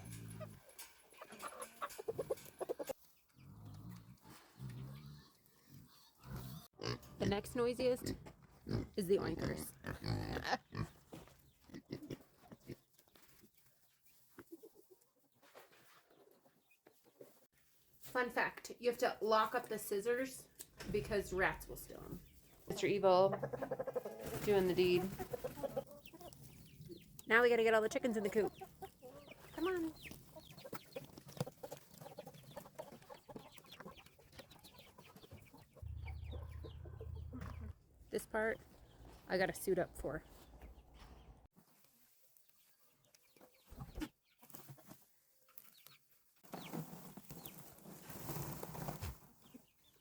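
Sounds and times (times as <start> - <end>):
chickens clucking: 0.0 - 17.5, 19.3 - 50.0
pigs grunting: 3.4 - 11.0
steady low rumble: 35.8 - 37.8.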